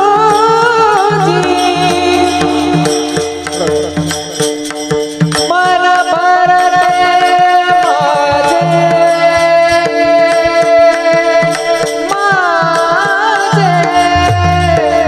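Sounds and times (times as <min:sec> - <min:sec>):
person singing: 0:00.0 - 0:04.5, 0:05.5 - 0:15.0
drum strokes: 0:01.2 - 0:05.8.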